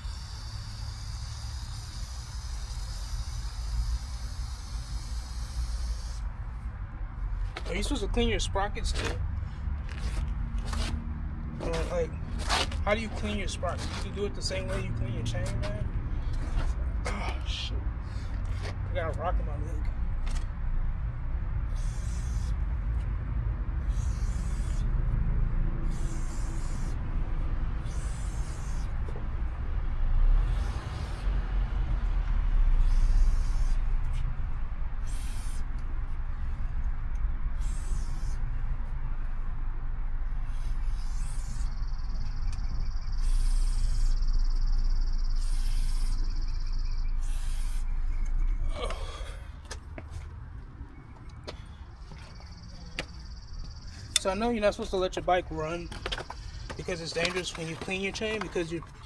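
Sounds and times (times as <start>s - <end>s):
aerosol spray hissing: 0.0s - 6.2s, 23.9s - 24.9s, 25.8s - 27.0s, 27.8s - 29.0s, 43.2s - 44.3s, 45.3s - 46.3s, 47.2s - 47.9s
steady low rumble: 0.0s - 59.0s.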